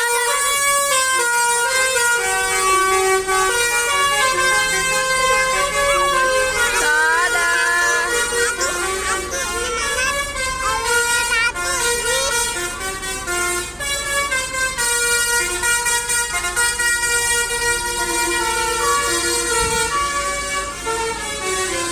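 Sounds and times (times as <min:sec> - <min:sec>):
multi-tone air horn playing a tune: 0:00.0 - 0:21.9.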